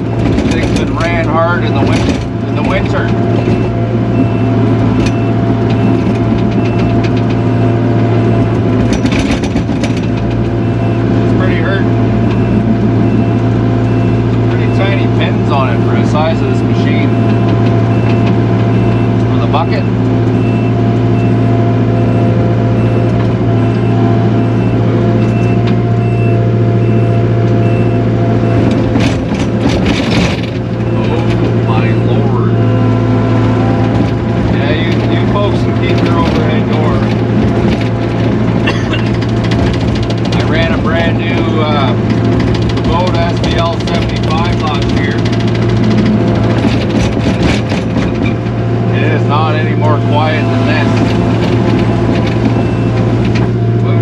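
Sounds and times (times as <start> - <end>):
backup alarm beeping: 0.0 - 9.1, 10.5 - 34.0, 50.3 - 53.2
diesel engine running: 0.0 - 54.0.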